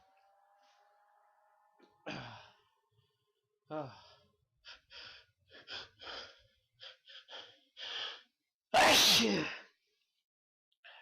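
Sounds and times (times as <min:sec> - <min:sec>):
person sneezing: 0:08.8 - 0:09.6.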